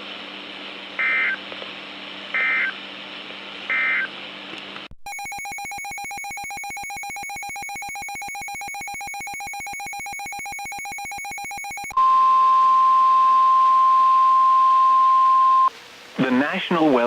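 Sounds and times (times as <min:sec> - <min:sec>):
broadcast static hum and hiss: 0:00.0 - 0:06.5, 0:12.0 - 0:17.0.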